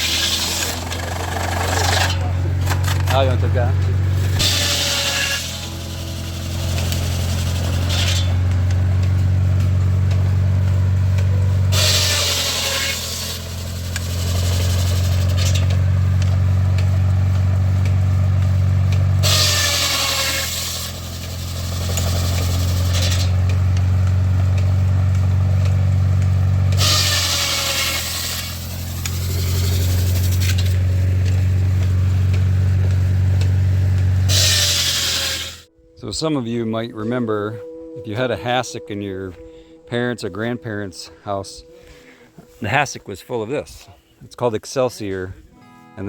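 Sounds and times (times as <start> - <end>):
rasping hiss of wood being cut: 0.0 - 2.3, 4.2 - 8.3, 19.2 - 23.3, 26.8 - 30.8, 34.3 - 35.6
wood-cutting machine droning: 0.0 - 35.8.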